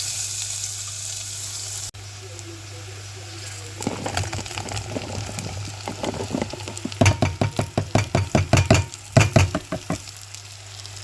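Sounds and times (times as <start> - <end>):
knife chopping on cutting board: 6.9 - 10.0.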